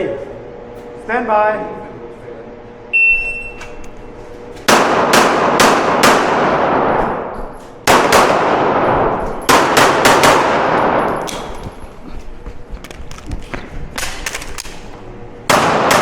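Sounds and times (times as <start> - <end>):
handgun shots echoing: 4.6 - 7.3, 7.9 - 11.6, 15.5 - 16.0.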